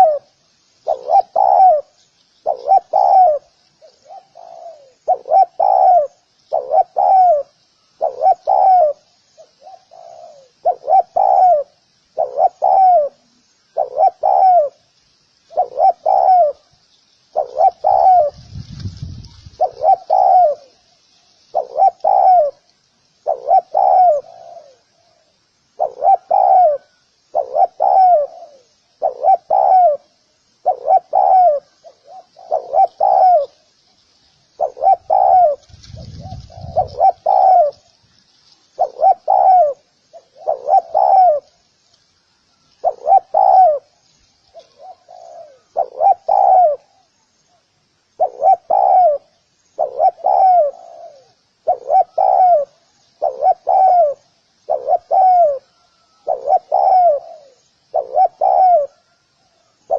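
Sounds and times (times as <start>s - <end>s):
dove cooing: 0.0s - 20.9s, 21.5s - 33.7s, 34.5s - 41.6s, 42.5s - 59.9s.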